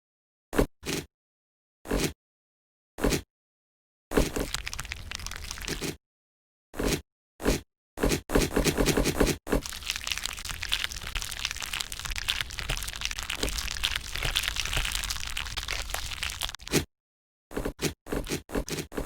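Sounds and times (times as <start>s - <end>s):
slime squeezed by hand crackling: 4.4s - 5.9s, 9.6s - 16.8s.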